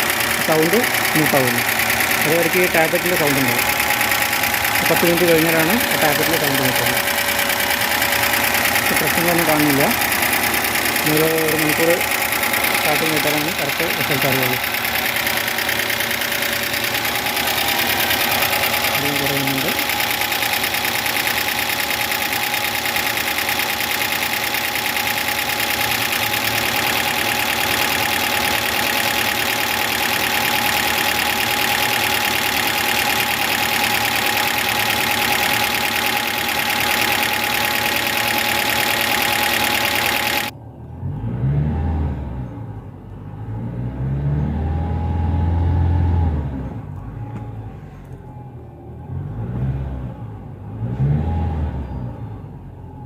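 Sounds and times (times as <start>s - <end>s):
car engine idling: 0.0s - 40.6s.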